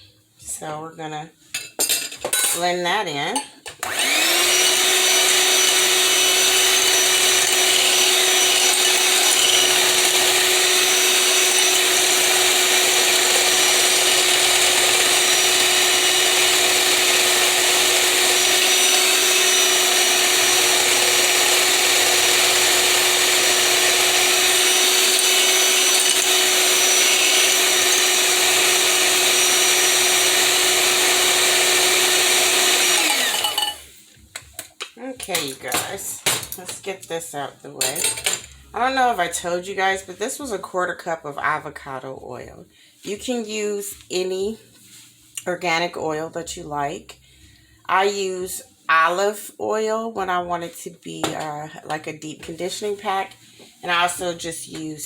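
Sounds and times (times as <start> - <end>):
blender motor winding down: 3.8 - 33.8
electric blender motor running: 3.8 - 33.8.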